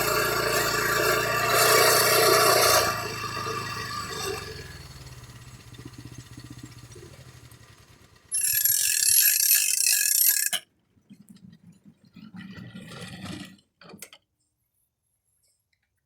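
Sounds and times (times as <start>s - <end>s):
sawmill engine winding down: 0.0s - 10.6s.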